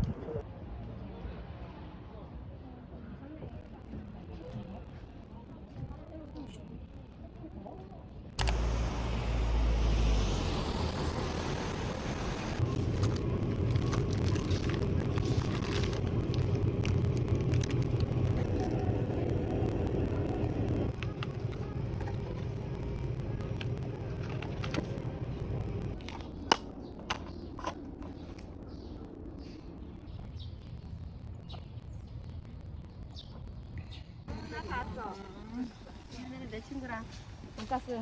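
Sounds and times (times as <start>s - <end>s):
sharp clicks: 8.4s - 9.7s
vehicle rumbling in motion: 8.4s - 32.8s.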